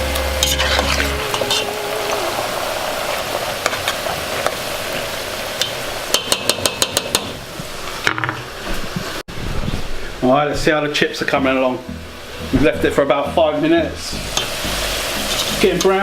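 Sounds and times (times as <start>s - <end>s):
chips sizzling in hot oil: 0.0s - 8.0s, 14.1s - 16.0s.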